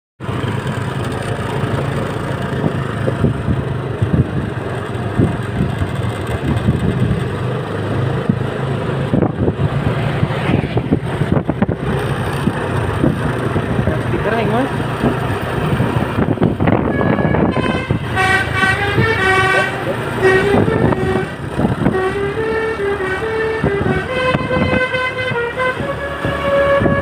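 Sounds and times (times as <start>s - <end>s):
vehicle engine rumbling: 0.2s - 27.0s
wind on microphone: 2.4s - 14.2s, 14.9s - 22.5s, 23.2s - 27.0s.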